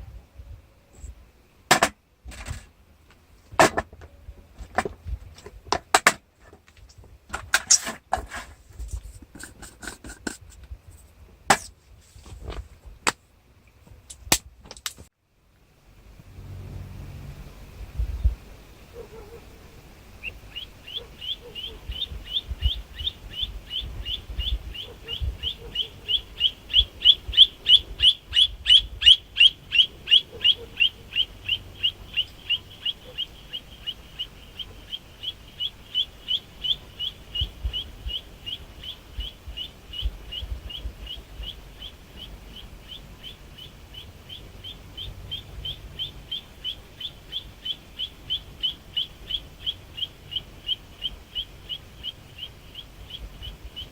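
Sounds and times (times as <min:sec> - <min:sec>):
songbird calling short high notes: 0:16.3 - 0:52.5.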